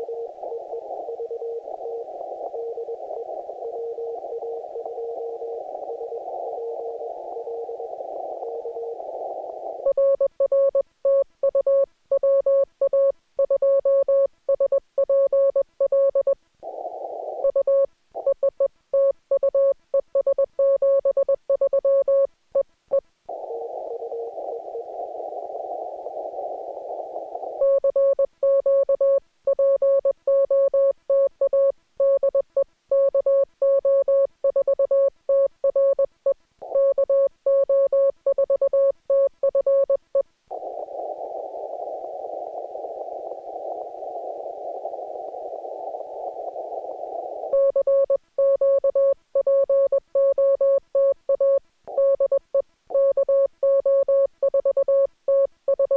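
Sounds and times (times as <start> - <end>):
radio receiver hiss: 0.0 - 9.8, 16.6 - 17.5, 23.3 - 27.6, 40.5 - 47.6
weak morse code tone: 23.3 - 55.9.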